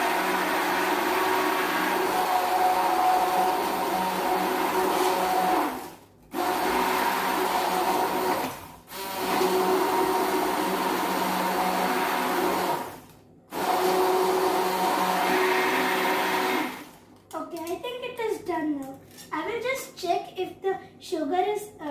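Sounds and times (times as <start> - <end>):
electric blender running: 0.0 - 17.0.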